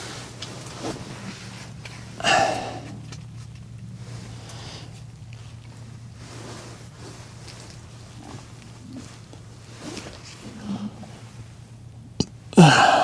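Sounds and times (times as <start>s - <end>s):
person sighing: 12.6s - 13.0s.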